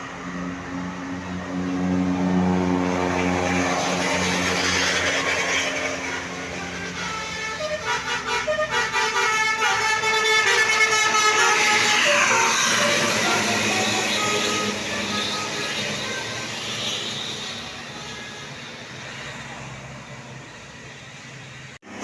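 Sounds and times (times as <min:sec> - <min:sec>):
bus engine running: 0:00.0 - 0:22.0
multi-tone musical air horn: 0:03.3 - 0:18.8.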